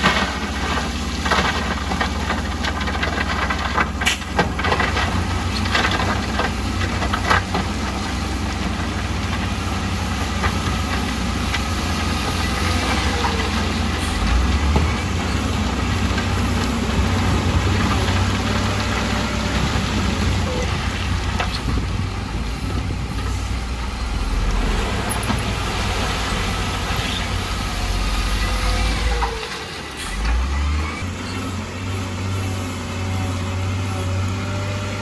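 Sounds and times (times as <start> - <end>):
diesel engine deep rumble: 0.0 - 35.0.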